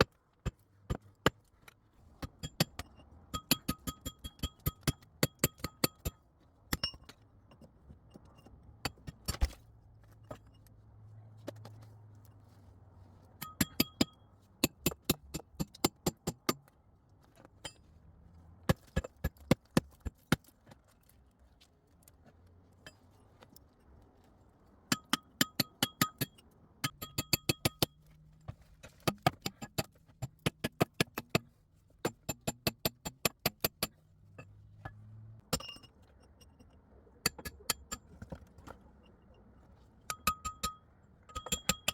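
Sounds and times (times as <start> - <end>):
tool striking rock: 0.0 - 8.2, 8.8 - 9.6, 13.4 - 16.7, 18.7 - 20.5, 24.9 - 28.0, 28.8 - 34.0, 34.8 - 35.9, 37.2 - 38.8, 40.1 - 41.9.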